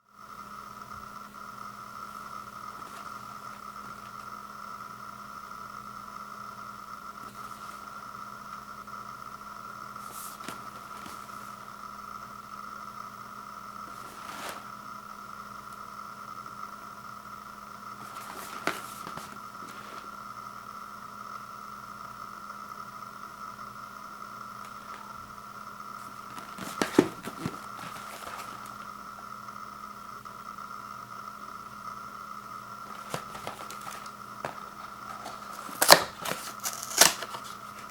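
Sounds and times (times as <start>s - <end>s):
electrical hum: 0.0s - 37.9s
handling scrapes and knocks: 13.9s - 14.6s, 18.0s - 20.0s, 26.3s - 28.8s, 32.9s - 37.9s.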